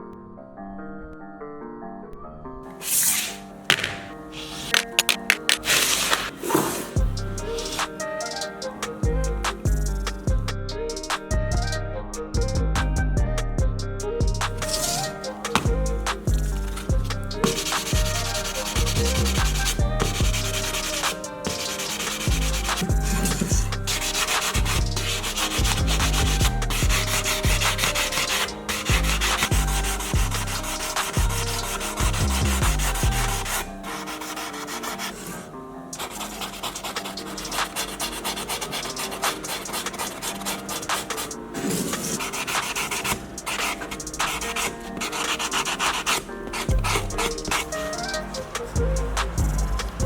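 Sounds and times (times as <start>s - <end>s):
background music with bass: 5.9s - 34.4s, 36.8s - 50.0s
sanding metal part: 14.6s - 35.4s.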